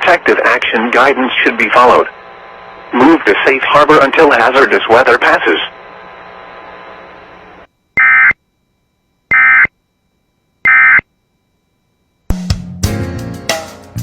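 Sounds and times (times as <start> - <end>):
faint radio hiss: 0.0 - 7.7
music with guitar and drums: 12.3 - 14.0.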